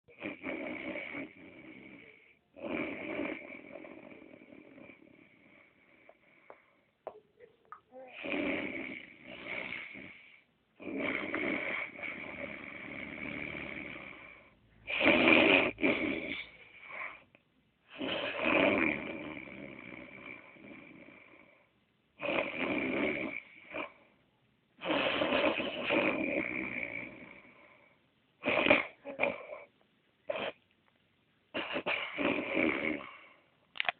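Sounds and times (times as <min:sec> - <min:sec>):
man snoring: 0:00.1 - 0:05.8, 0:08.1 - 0:17.2, 0:17.9 - 0:21.6, 0:22.2 - 0:24.0, 0:24.8 - 0:29.7, 0:32.1 - 0:33.3
breathy snorts: 0:00.1 - 0:06.8, 0:08.0 - 0:17.3, 0:17.9 - 0:24.1, 0:24.8 - 0:30.7, 0:31.5 - 0:33.5.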